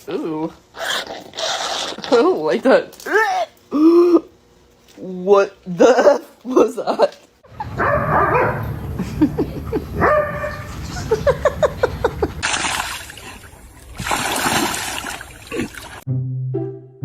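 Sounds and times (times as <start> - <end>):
splashing: 10.3 - 16.0.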